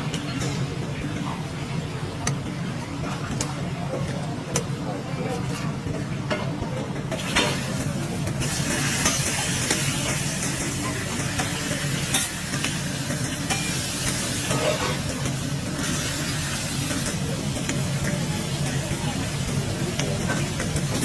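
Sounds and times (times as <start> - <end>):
food sizzling: 7.1 - 21.0.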